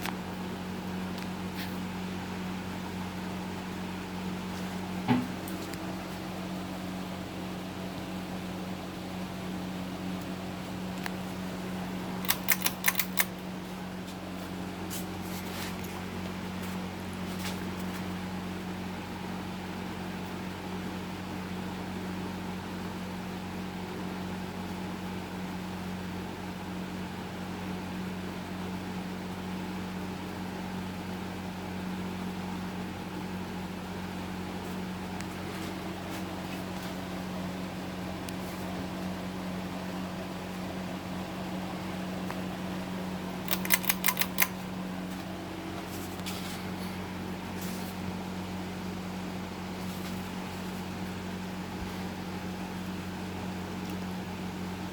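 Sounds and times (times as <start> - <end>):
ceiling fan motor hum: 0.0 - 54.9
sharp clicks: 12.2 - 13.4, 43.4 - 44.6.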